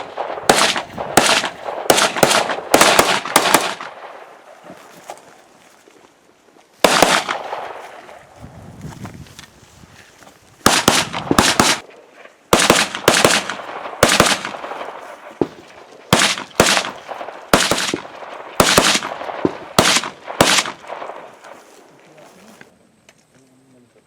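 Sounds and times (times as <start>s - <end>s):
rifle shots with echo: 0.0s - 4.6s, 6.8s - 8.2s, 10.6s - 21.6s.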